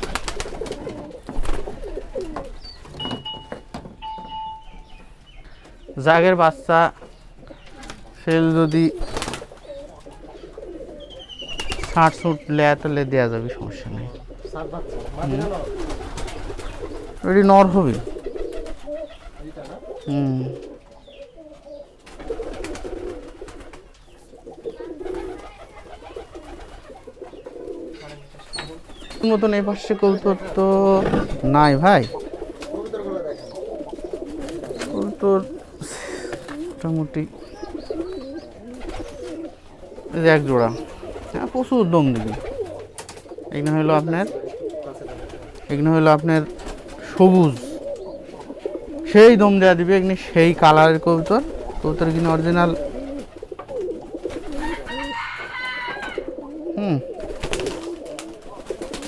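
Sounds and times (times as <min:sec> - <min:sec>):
pigeons cooing: 0:00.0 - 0:59.0
short high tones: 0:03.0 - 0:05.0.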